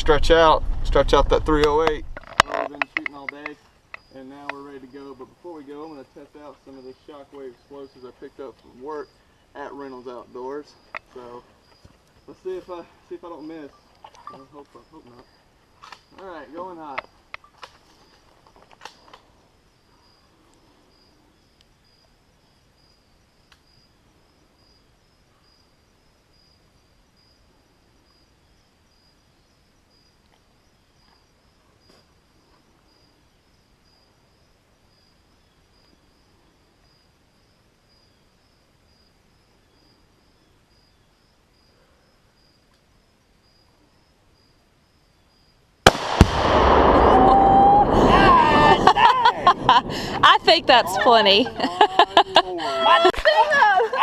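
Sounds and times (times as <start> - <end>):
insects trilling: 0.0 - 54.0
rifle shot and exploding target: 45.9 - 47.5.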